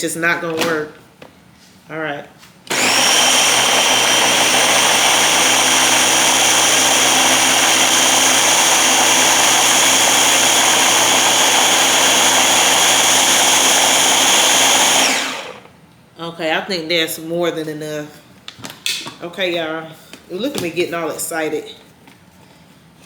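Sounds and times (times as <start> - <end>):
electric blender motor running: 2.7 - 15.7.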